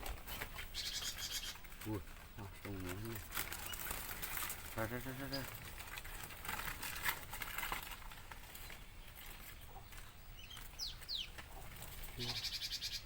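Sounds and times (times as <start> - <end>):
chickens clucking: 0.0 - 13.0
small bird chirping: 0.3 - 2.0, 2.8 - 4.0, 4.8 - 5.6, 7.8 - 13.0.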